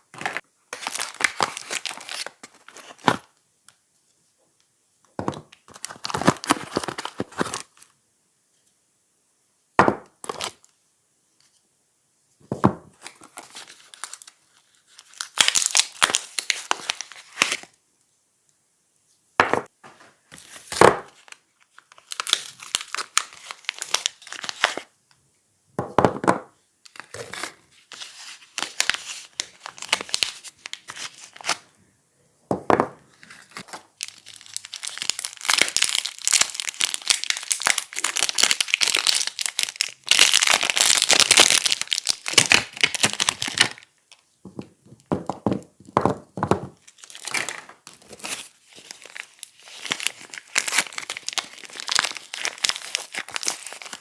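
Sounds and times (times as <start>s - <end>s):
packaging crinkling and tearing: 0.1s - 3.3s, 5.5s - 7.9s, 13.0s - 17.8s, 20.4s - 24.9s, 26.8s - 31.6s, 33.2s - 44.2s, 46.8s - 54.0s.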